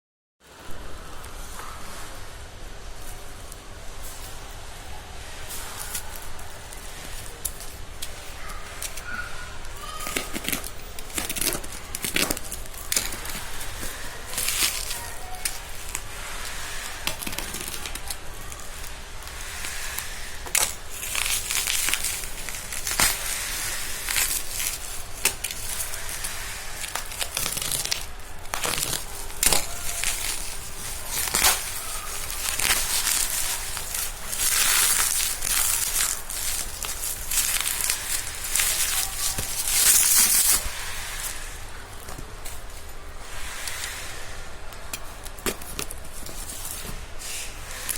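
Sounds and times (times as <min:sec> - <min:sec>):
plastic packaging crinkling: 0:02.9 - 0:47.9.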